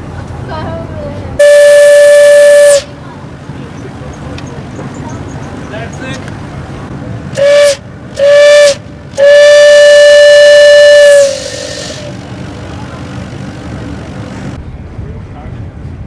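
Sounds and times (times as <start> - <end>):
steam whistle blasts: 1.4 - 2.9, 7.4 - 12.3
hiss of steam: 7.4 - 12.3.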